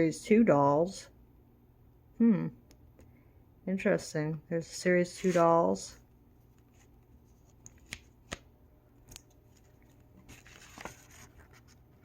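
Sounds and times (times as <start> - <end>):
paper rustling: 5.1 - 5.6, 6.5 - 12.0.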